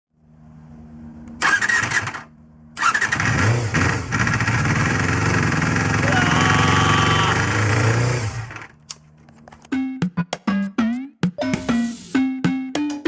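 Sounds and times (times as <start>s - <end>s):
motorcycle engine starting: 1.2s - 8.8s.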